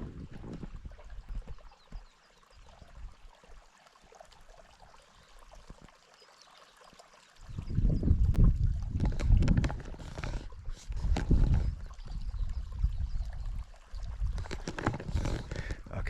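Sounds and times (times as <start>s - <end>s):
wind buffeting microphone: 0.0s - 3.2s, 7.4s - 16.0s
small stream trickling: 0.0s - 16.0s.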